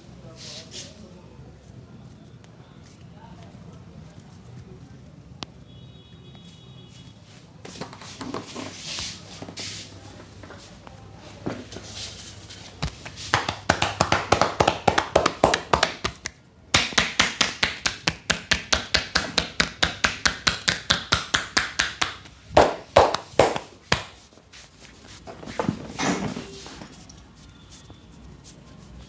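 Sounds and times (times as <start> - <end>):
hands rapidly striking body: 12.8 - 24.2
hard slaps: 12.8 - 24.2.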